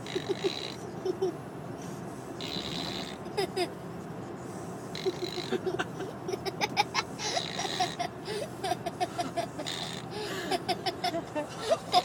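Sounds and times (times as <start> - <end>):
boy snoring raspily: 0.0 - 0.8, 2.4 - 3.4, 5.0 - 5.7, 7.2 - 8.2, 8.9 - 10.7
stifled giggling: 5.0 - 12.0.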